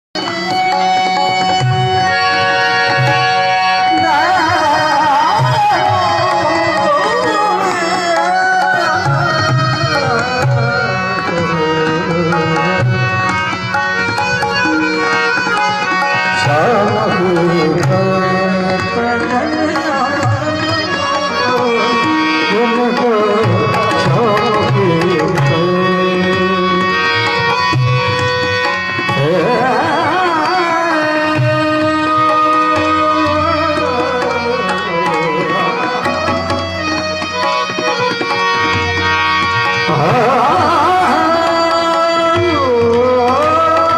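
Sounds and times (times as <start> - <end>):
person singing folk melody: 16.4 - 27.3, 29.1 - 36.6, 39.8 - 43.9.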